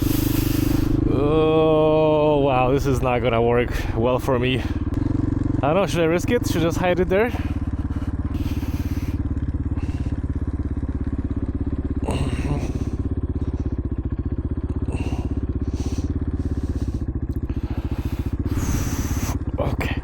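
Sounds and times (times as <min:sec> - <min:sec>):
motorcycle engine idling: 0:00.0 - 0:20.0.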